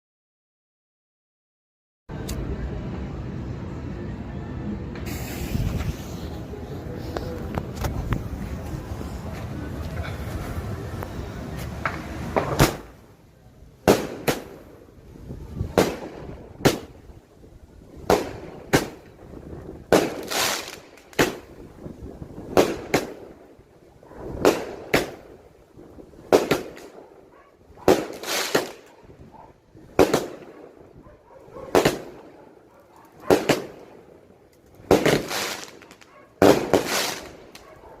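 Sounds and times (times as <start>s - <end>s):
fireworks bangs: 5.0s - 8.7s, 11.7s - 13.1s, 13.8s - 17.1s, 17.9s - 38.0s.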